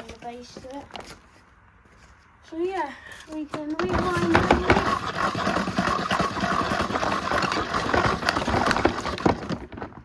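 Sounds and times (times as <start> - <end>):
vacuum cable rewinding rattle: 3.8 - 9.9.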